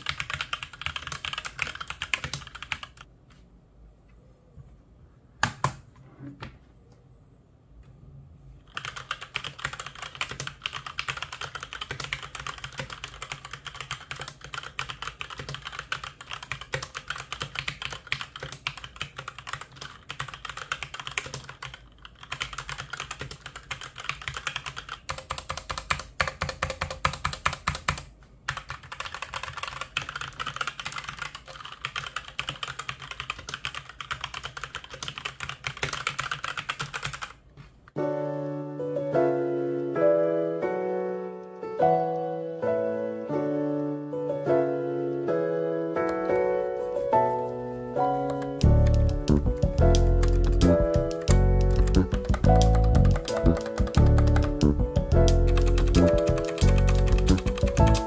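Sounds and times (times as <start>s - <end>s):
keyboard keys clicking: 0.0s - 3.1s, 8.7s - 37.4s, 45.1s - 47.3s, 48.0s - 58.0s.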